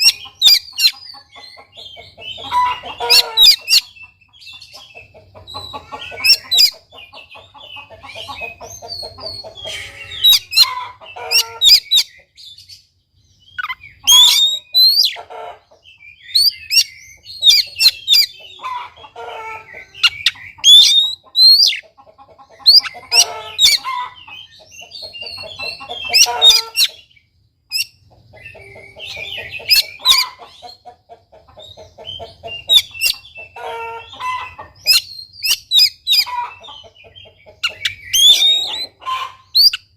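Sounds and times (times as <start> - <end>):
rapid clucking bird notes: 0.0 - 12.5, 13.5 - 27.1, 27.7 - 39.9
bird singing whistled notes: 13.5 - 15.2, 34.8 - 36.8, 37.6 - 39.0.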